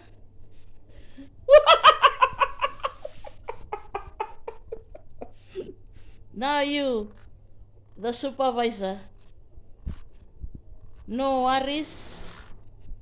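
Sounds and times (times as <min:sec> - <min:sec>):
person laughing heartily: 0:01.5 - 0:05.8.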